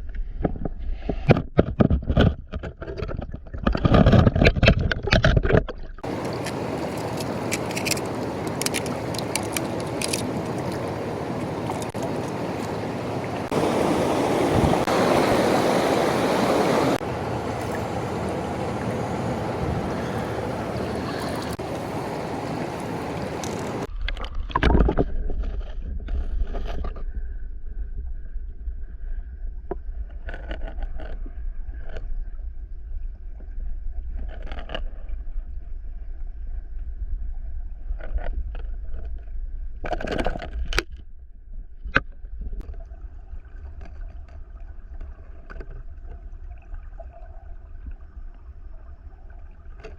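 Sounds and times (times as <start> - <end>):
handling knocks and clicks: 0.4 - 12.8
rushing stream water: 6.0 - 23.9
wind rumble on microphone: 8.3 - 49.9.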